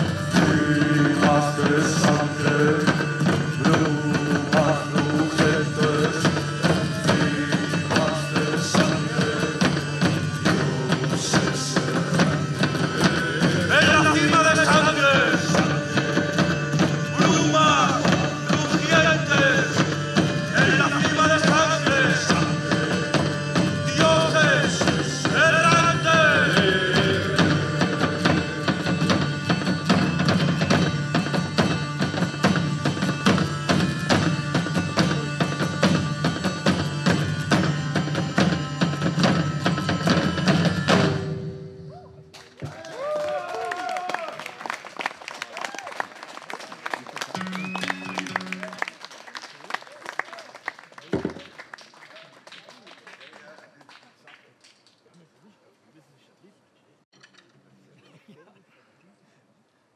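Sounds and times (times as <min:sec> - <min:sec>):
fast percussion: 0:00.0 - 0:41.6, 0:47.3 - 0:49.2
wavering lead melody: 0:47.4 - 0:48.8.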